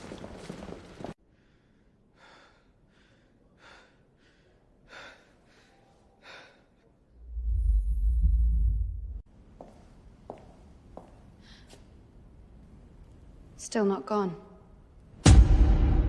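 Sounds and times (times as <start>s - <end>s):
faint breathing: 1.2s - 9.2s.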